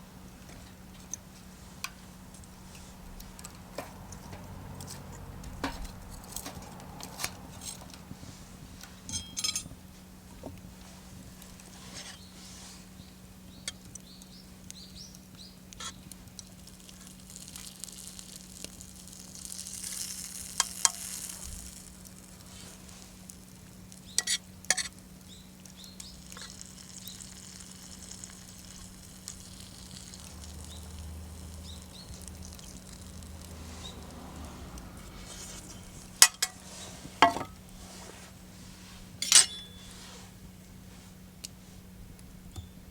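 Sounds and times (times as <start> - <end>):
tongs clinking against pan: 9.1 - 9.8, 24.1 - 24.9, 39.2 - 39.9
meat sizzling in a frying pan: 16.2 - 34.2.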